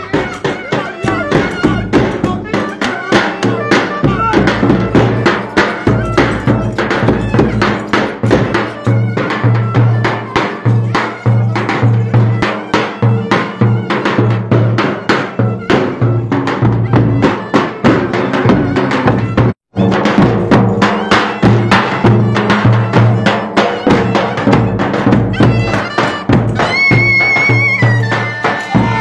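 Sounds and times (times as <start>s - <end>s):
folk dance music: 0.0s - 29.0s.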